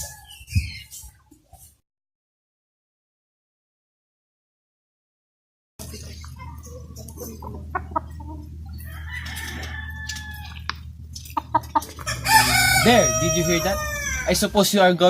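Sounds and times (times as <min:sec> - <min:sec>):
chicken clucking: 0:05.8 - 0:14.4
steady low hum: 0:05.8 - 0:14.8.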